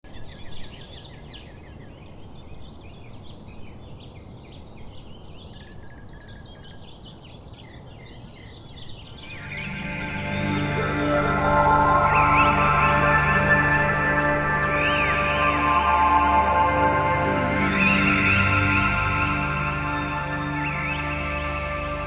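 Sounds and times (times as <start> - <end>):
birds chirping and singing: 4.2 - 22.0
music: 9.2 - 22.0.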